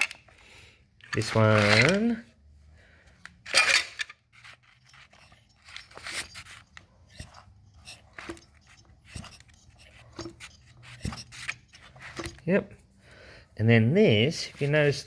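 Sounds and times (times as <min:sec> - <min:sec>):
rustling: 0:01.0 - 0:13.1.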